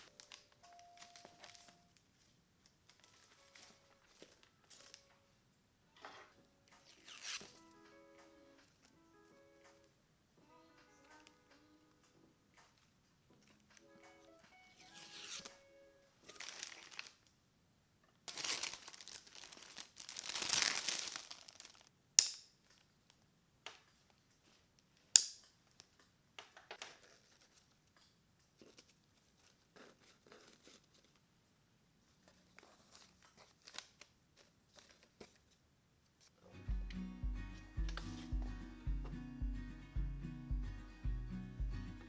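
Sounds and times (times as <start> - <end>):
packaging crinkling and tearing: 0.0 - 1.8, 14.8 - 15.5, 16.3 - 17.3, 18.3 - 21.9, 32.6 - 35.4
small handling noises: 0.0 - 10.0, 10.8 - 15.6, 16.2 - 17.4, 18.0 - 36.5, 37.5 - 39.2.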